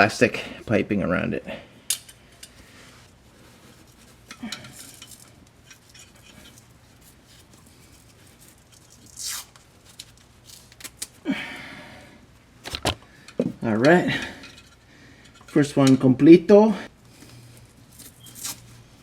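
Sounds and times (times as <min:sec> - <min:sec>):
tape ripping off roll: 0:09.0 - 0:09.7.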